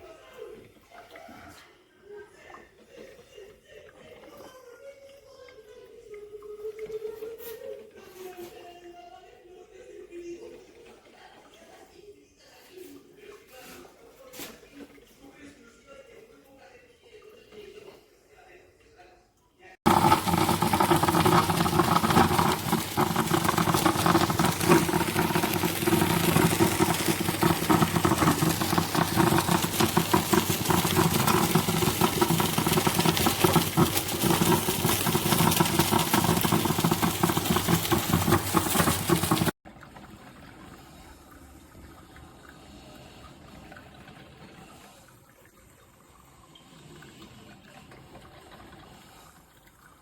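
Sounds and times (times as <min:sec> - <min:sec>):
coffee maker gurgling and hissing: 0:19.8 - 0:50.0.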